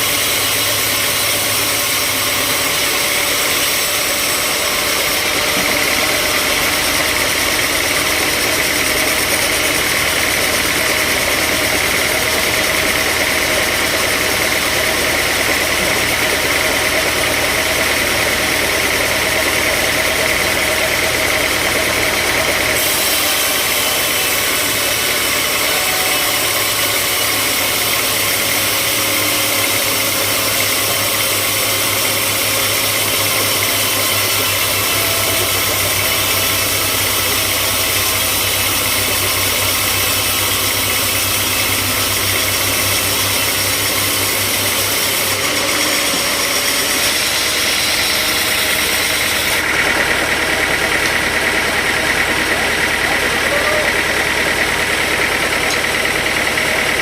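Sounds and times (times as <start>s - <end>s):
high-pitched machine whine: 0.0s - 57.0s
sawmill machinery running: 0.0s - 57.0s.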